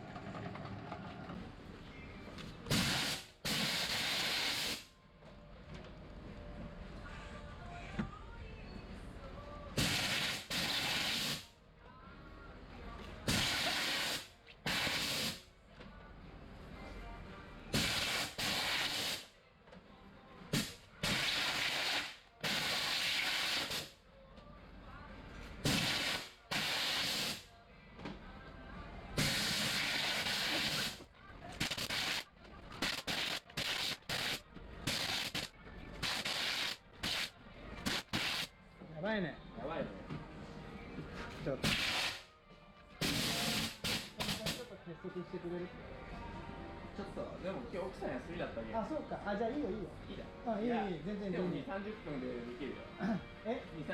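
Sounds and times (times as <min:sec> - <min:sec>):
compressed air hissing bursts: 0:02.7 - 0:04.9, 0:09.8 - 0:11.5, 0:13.3 - 0:15.4, 0:17.8 - 0:19.3, 0:20.6 - 0:23.9, 0:25.6 - 0:27.4, 0:29.2 - 0:31.0, 0:41.6 - 0:42.3, 0:43.0 - 0:44.6
compressed air blasts hissing: 0:09.8 - 0:11.5.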